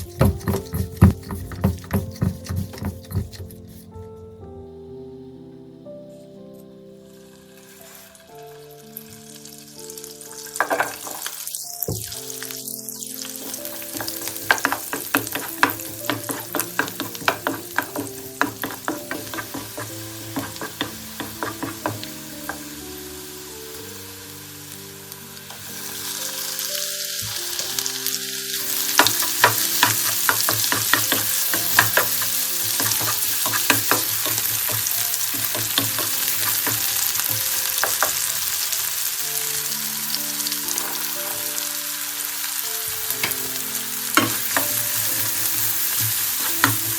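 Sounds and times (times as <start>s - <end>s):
food sizzling in a hot pan: 0.0s - 3.8s, 7.0s - 46.9s
spatula scraping a pan: 0.0s - 4.0s, 7.4s - 8.4s, 13.3s - 22.8s, 28.6s - 39.2s, 43.2s - 46.9s.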